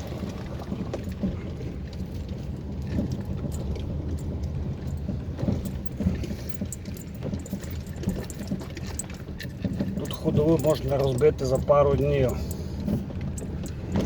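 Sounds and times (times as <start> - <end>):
car engine and road rumble: 0.0 - 14.0
suspension knocks and jolts: 0.0 - 14.0.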